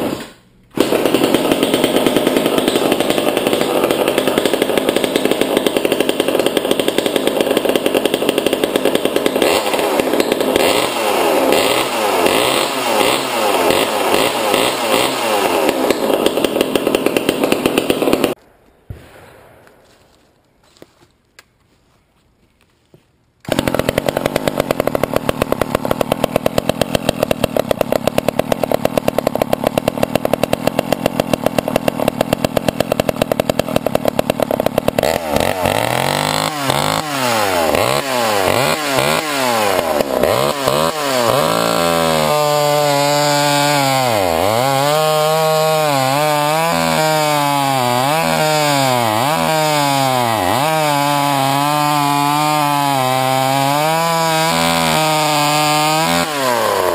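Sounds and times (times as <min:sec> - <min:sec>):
chainsaw engine revving: 0:00.0 - 0:18.4, 0:23.4 - 0:56.9.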